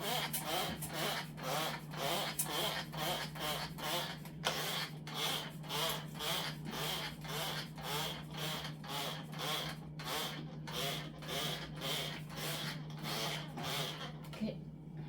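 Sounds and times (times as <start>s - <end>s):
steady low hum: 9.4s - 15.0s.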